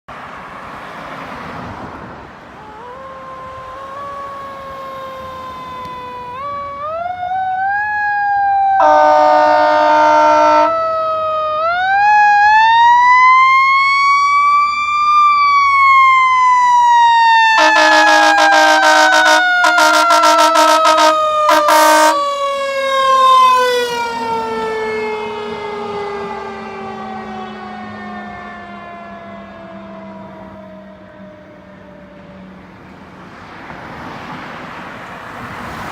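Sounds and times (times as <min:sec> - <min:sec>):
fire engine siren wailing: 0:02.4 - 0:32.7
air horn blasts: 0:08.8 - 0:10.8, 0:17.5 - 0:22.3.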